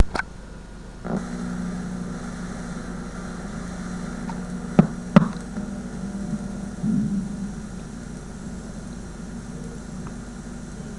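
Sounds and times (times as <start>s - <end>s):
tape hiss: 0.0s - 10.9s
low buzz: 0.2s - 10.9s
sharp pops: 3.5s - 5.7s.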